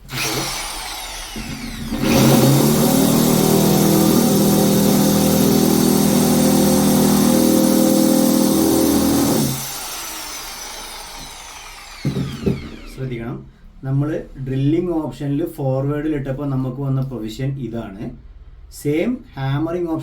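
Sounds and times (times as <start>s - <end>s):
drill boring into concrete: 0.0s - 13.1s.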